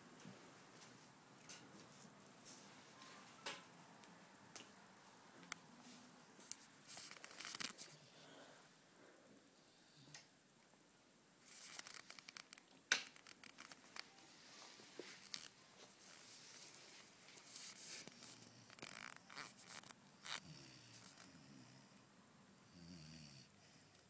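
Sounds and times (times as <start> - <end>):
rustling and scratchy clicks: 6.4 - 8.0, 11.4 - 14.2, 15.0 - 20.4
puppy snoring: 17.6 - 22.0.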